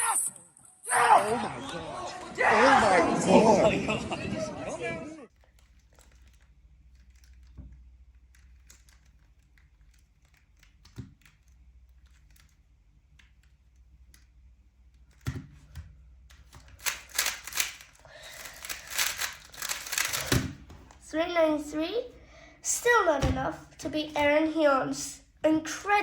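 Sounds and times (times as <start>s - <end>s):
plastic puzzle cube turning clatter: 5.3s - 15.3s, 16.3s - 20.5s.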